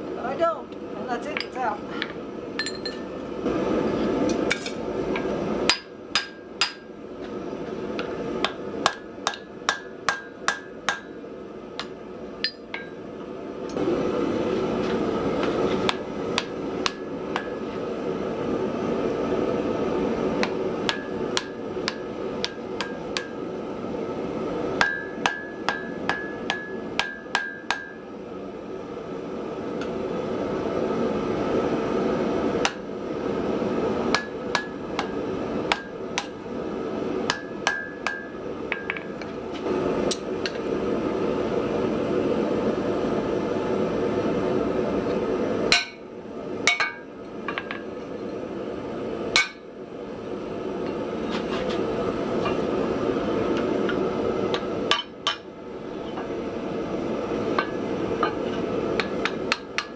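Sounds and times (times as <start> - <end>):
hammer striking metal: 5.7 - 6.9, 8.4 - 11.2, 24.8 - 28.0, 37.3 - 39.2, 49.4 - 49.7, 54.9 - 55.5.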